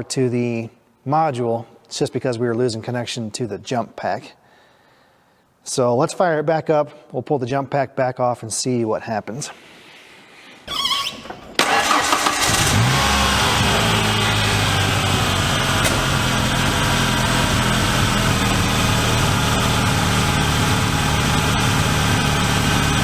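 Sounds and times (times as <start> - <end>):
car engine starting and idling: 10.7 - 23.0.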